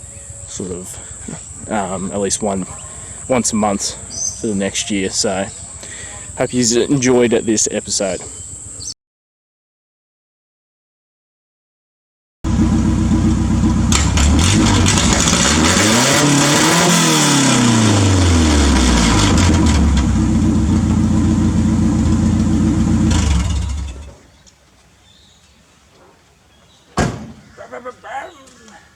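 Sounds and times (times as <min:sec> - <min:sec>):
petrol engine revving and running: 0:12.5 - 0:24.2.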